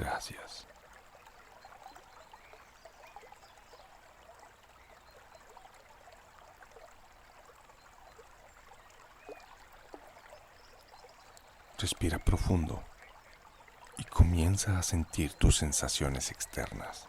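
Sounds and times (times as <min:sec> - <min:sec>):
stream trickling over stones: 0:00.0 - 0:17.0.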